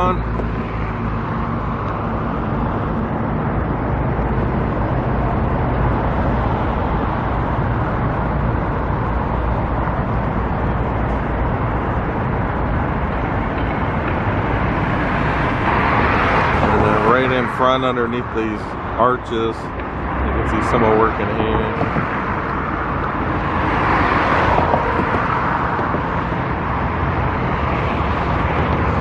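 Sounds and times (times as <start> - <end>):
low engine hum: 0.0 - 29.0
road traffic noise: 0.0 - 29.0.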